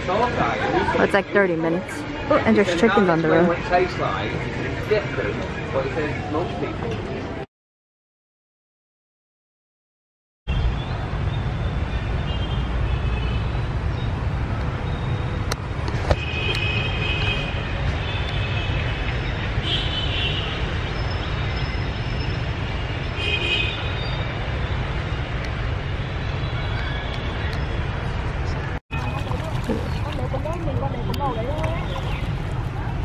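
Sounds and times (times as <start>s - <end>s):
traffic rumble: 0.0s - 7.5s, 10.5s - 33.0s
vehicle horns beeping: 23.2s - 24.1s.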